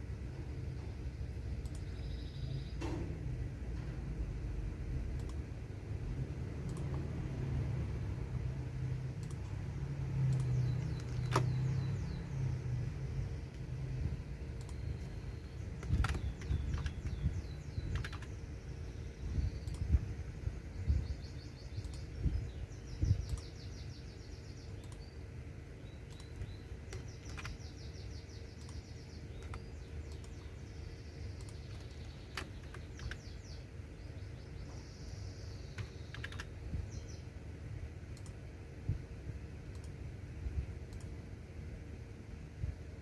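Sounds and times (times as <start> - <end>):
high chirping trills: 8.7 - 37.4
computer keyboard typing: 10.3 - 11.6, 15.7 - 18.4, 26.1 - 27.7, 28.6 - 30.4, 31.4 - 33.4, 35.8 - 36.6.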